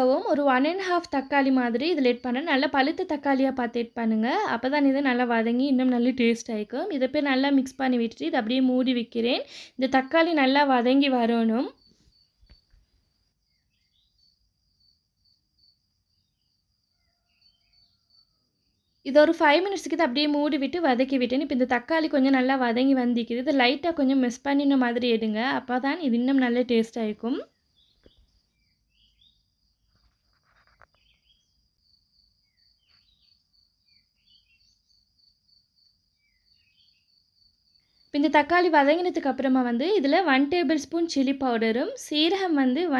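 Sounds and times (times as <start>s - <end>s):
faint chirps: 9.2s - 39.2s
cricket trilling: 9.9s - 24.8s, 25.5s - 40.7s
soft brief rustle: 29.9s - 31.2s.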